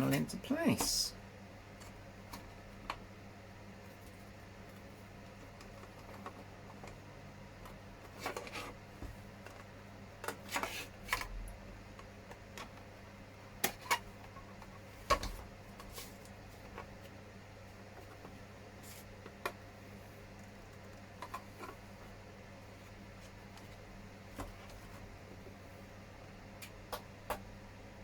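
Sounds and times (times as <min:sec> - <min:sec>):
low steady hum: 0:00.0 - 0:10.4.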